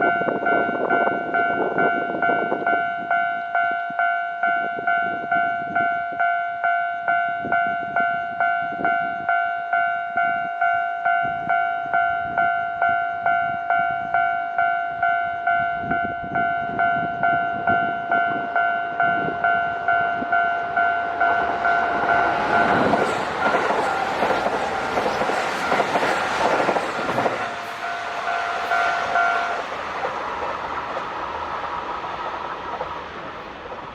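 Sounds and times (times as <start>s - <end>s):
level crossing warning bell dinging: 0.0s - 31.1s
train rushing past: 17.2s - 33.9s.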